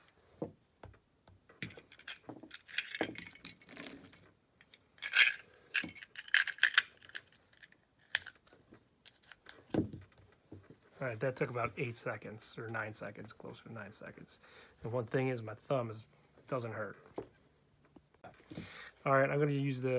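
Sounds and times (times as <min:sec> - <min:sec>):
cartridges clicking into magazine: 0:06.1 - 0:08.3.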